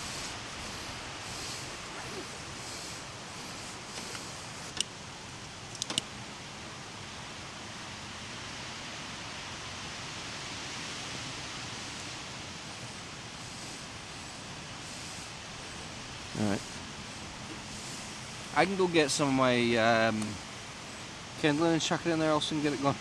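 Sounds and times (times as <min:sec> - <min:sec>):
steady hiss: 0:00.0 - 0:23.0
sharp clicks: 0:05.7 - 0:06.1.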